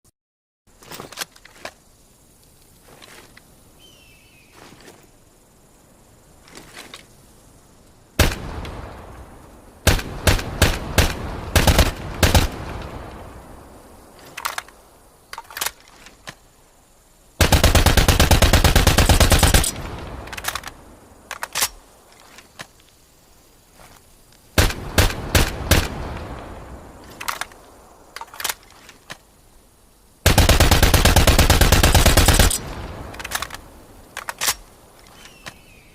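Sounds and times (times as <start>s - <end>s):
full-automatic gunfire burst: 9.9s - 12.6s, 17.4s - 19.8s, 30.2s - 32.6s.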